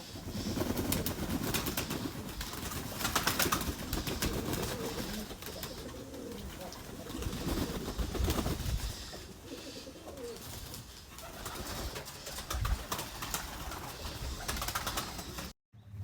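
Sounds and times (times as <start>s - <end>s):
pigeons cooing: 0.0s - 15.5s.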